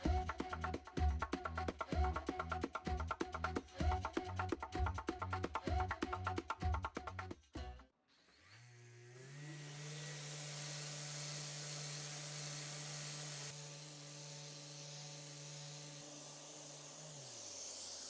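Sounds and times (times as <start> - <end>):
power tool motor whining: 8.4 - 18.0.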